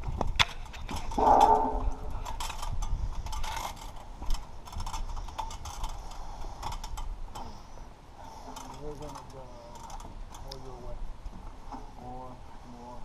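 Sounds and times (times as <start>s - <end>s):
clicking and rattling on metal roof: 0.0s - 7.6s
low rumble: 0.9s - 3.5s.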